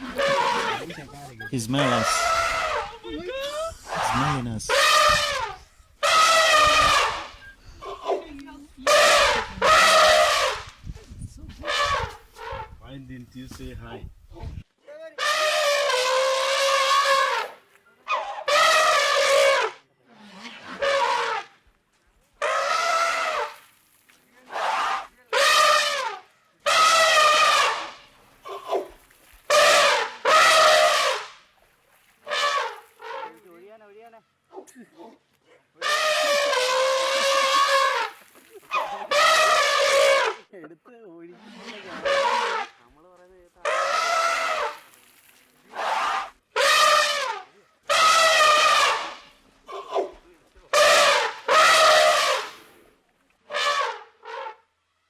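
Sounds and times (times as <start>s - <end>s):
animal calling loudly: 0.0s - 8.2s, 8.8s - 10.7s, 15.2s - 19.8s, 22.4s - 23.6s, 24.5s - 31.4s, 32.2s - 33.4s, 35.8s - 40.4s, 41.4s - 42.8s, 43.6s - 44.9s, 45.7s - 50.2s, 50.8s - 52.7s.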